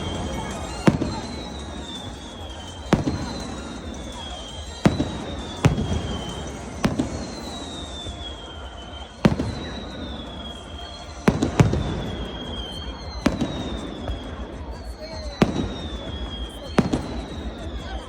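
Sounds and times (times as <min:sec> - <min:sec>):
firework shells bursting: 0:00.0 - 0:14.4.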